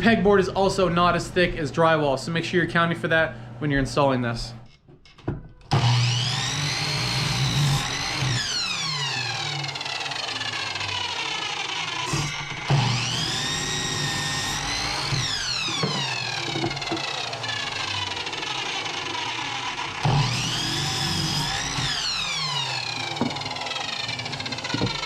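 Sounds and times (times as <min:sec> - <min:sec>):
electric saw cutting wood: 0:05.7 - 0:25.0.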